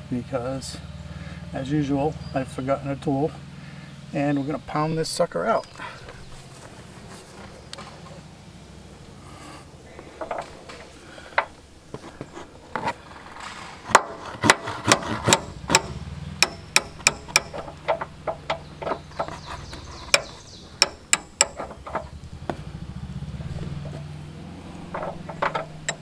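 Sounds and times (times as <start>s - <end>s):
hammer striking metal tool: 13.9s - 22.1s.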